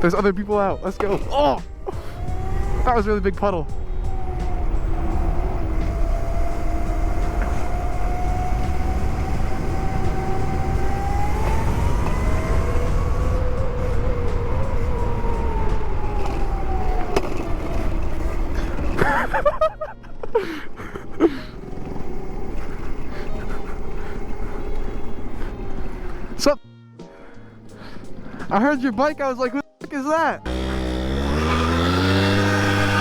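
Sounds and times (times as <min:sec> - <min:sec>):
wind rumble on microphone: 0:00.0 - 0:19.4
electric motor and chain whine: 0:00.0 - 0:26.4, 0:30.5 - 0:33.0.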